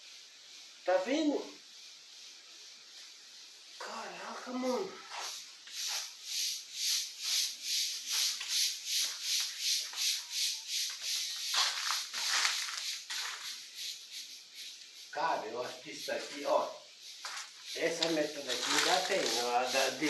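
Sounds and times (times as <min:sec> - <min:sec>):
footsteps crunching on loose ground: 0:10.9 - 0:13.6, 0:16.1 - 0:20.0.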